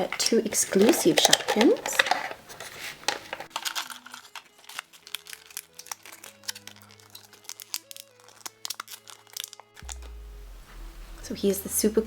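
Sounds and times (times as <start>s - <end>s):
plastic packaging crinkling: 0.0s - 10.1s
soft background music: 0.0s - 12.0s.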